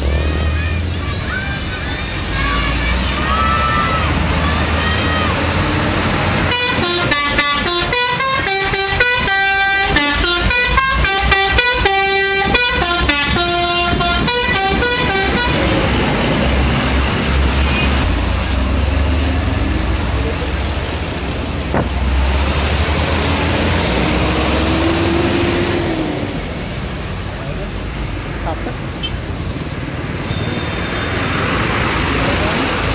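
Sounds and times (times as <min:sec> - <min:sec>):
low engine rumble: 0:00.0 - 0:29.9
street noise: 0:00.0 - 0:32.9
multi-tone air horn melody: 0:06.5 - 0:15.9.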